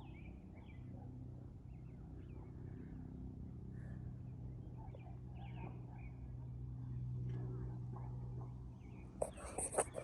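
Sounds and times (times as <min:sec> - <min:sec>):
low steady hum: 0:00.0 - 0:10.0
birds chirping: 0:03.8 - 0:10.0.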